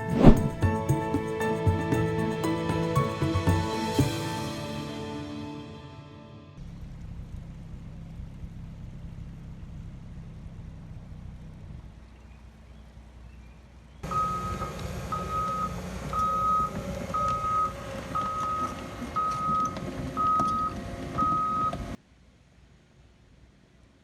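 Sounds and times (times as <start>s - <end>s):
engine low rumble: 6.6s - 14.1s
reversing alarm beeping: 14.1s - 21.8s.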